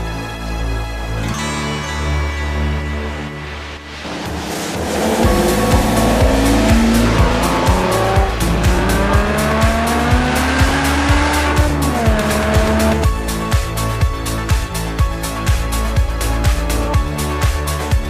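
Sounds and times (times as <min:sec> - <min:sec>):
background music with steady beat: 0:00.0 - 0:18.0
car engine at high revs: 0:04.0 - 0:13.1.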